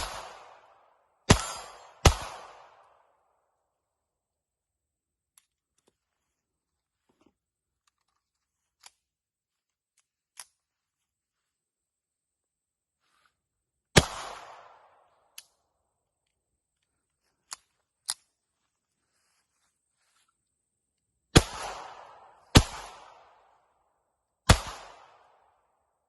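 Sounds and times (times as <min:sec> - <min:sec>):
pistol shots with echo: 0:00.0 - 0:03.2, 0:13.9 - 0:15.2, 0:21.3 - 0:23.6, 0:24.4 - 0:25.7.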